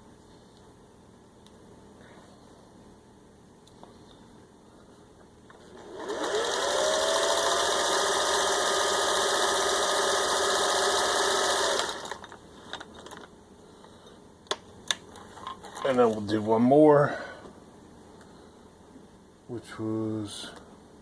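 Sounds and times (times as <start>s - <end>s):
sewing machine stitching: 5.6s - 12.3s.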